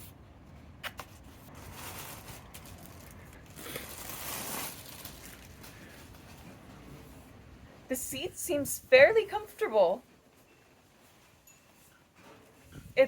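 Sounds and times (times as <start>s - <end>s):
packaging tearing and rustling: 1.5s - 5.9s.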